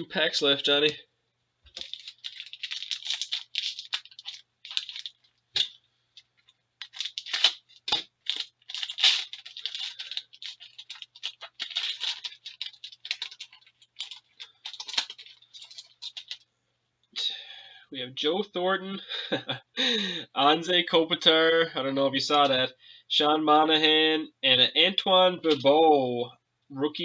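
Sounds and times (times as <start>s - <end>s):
cards ticking as handled: 1.7s - 16.4s
wrapper crinkling: 1.7s - 16.5s.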